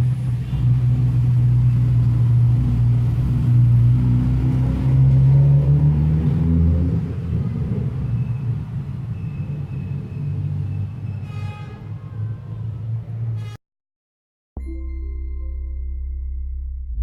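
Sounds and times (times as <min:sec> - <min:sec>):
music: 0:14.6 - 0:17.0.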